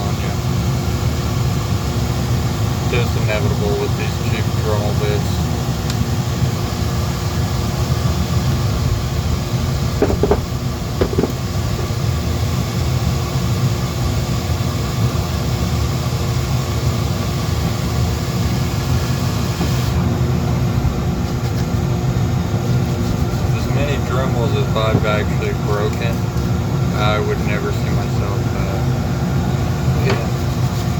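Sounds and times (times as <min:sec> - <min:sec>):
rotary tool texturing wood: 0:10.0 - 0:11.9.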